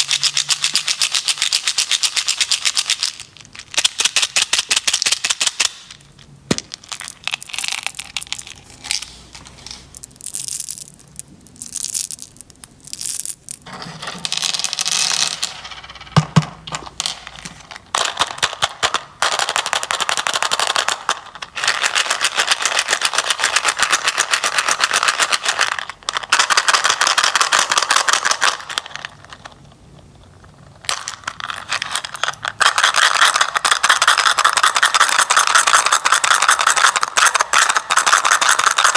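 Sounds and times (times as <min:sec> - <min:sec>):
wrapped candies crackling: 0:06.8 - 0:13.7.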